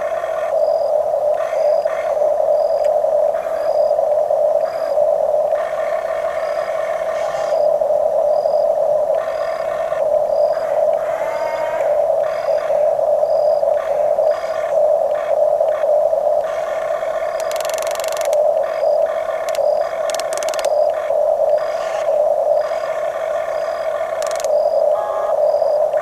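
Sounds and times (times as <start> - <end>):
electric motors whining: 6.2 - 7.7, 9.2 - 14.6, 19.3 - 21.0, 21.6 - 25.6
gear whine and grinding: 16.6 - 18.4, 19.4 - 21.0, 21.6 - 24.7.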